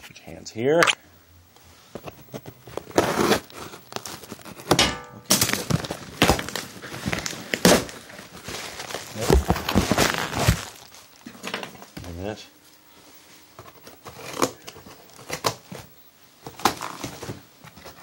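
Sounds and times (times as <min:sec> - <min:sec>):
cardboard packaging tearing: 0:02.1 - 0:11.2, 0:13.6 - 0:18.0.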